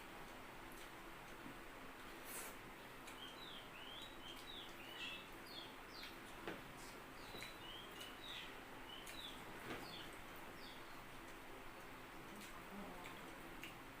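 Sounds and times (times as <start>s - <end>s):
faint bird chirping: 3.0s - 13.3s.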